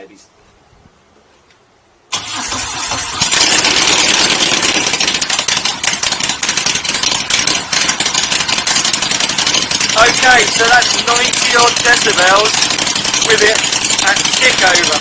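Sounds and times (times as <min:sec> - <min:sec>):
motorcycle engine idling: 0:03.4 - 0:15.0.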